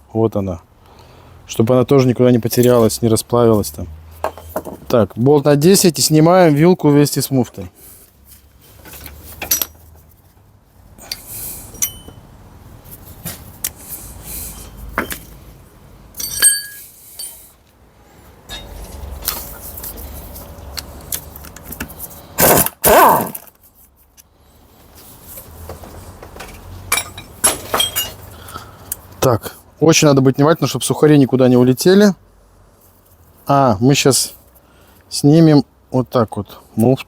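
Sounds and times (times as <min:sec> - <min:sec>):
metal tools clinking and scraping: 0:04.2 - 0:04.9, 0:08.3 - 0:10.4, 0:11.0 - 0:12.3, 0:12.9 - 0:15.4, 0:16.1 - 0:17.6, 0:18.4 - 0:20.5, 0:25.8 - 0:28.4
ringing metal clink: 0:11.7 - 0:12.2, 0:16.2 - 0:17.4.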